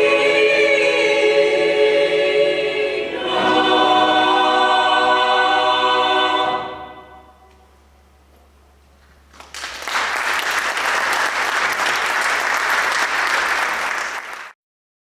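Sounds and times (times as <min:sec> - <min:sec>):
choral chord: 0:00.0 - 0:07.8
audience applauding: 0:09.3 - 0:14.6.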